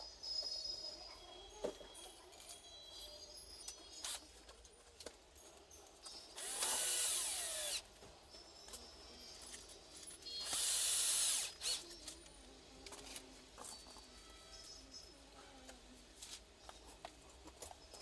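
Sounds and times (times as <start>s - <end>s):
power drill running: 6.4s - 7.8s, 10.4s - 11.8s.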